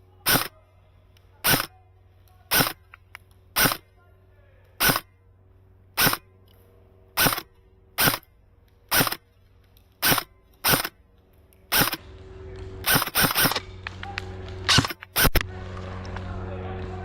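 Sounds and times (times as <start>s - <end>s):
low hum: 0.0s - 17.0s
airsoft rifle shots cracking: 0.2s - 0.6s, 1.4s - 1.8s, 2.5s - 2.9s, 3.6s - 3.9s, 4.8s - 5.1s, 6.0s - 6.3s, 7.2s - 8.2s, 8.9s - 9.2s, 10.0s - 11.0s, 11.7s - 12.0s, 12.7s - 15.5s.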